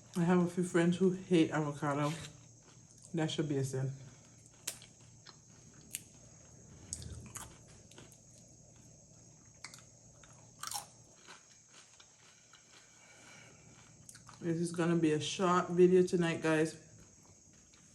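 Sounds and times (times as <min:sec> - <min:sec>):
person chewing crunchy chips: 0:02.0 - 0:03.2, 0:04.0 - 0:14.5.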